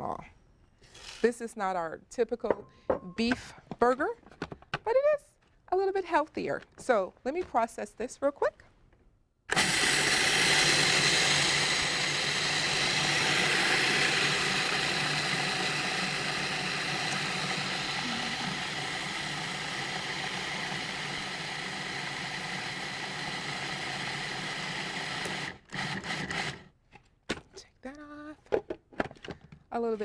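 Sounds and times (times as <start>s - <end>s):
food processor motor grinding: 9.5s - 26.7s.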